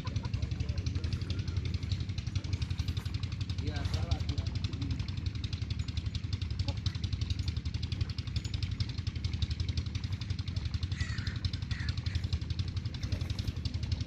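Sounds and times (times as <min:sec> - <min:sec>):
engine running with rapid pulse: 0:00.0 - 0:14.0.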